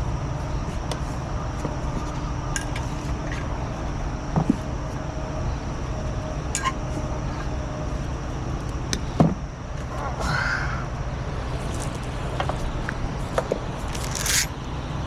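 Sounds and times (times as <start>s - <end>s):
metallic clinks and knocks: 13.9s - 14.5s.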